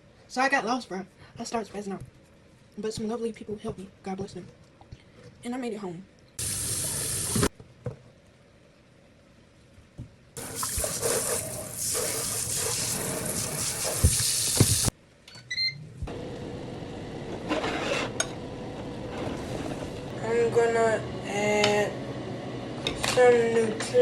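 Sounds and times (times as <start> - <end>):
water running from a tap: 6.4 - 7.5, 10.4 - 14.9.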